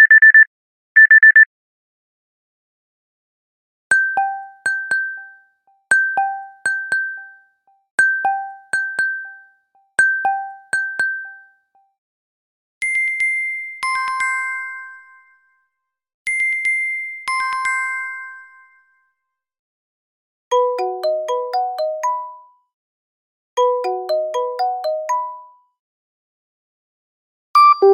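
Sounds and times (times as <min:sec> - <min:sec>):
two-pitch electronic ding: 0:27.6 - 0:27.9.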